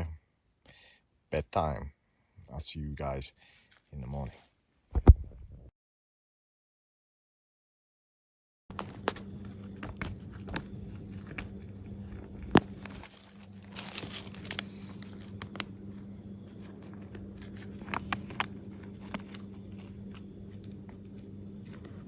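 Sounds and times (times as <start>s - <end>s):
crinkling and rustling: 8.7s - 22.0s
low hum: 8.7s - 22.0s.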